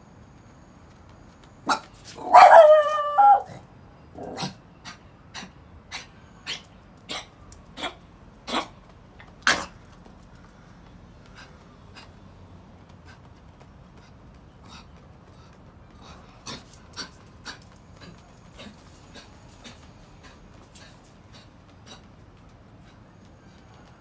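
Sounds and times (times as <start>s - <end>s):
dog coughing hoarsely: 4.2s - 8.8s, 9.4s - 9.8s, 16.0s - 22.0s.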